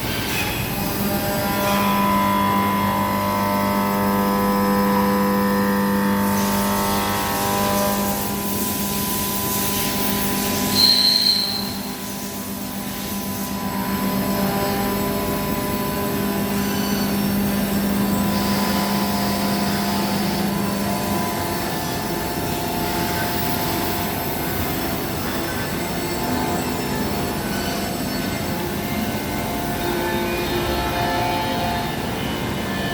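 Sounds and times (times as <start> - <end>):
machine steady mechanical hum: 0.0 - 32.9.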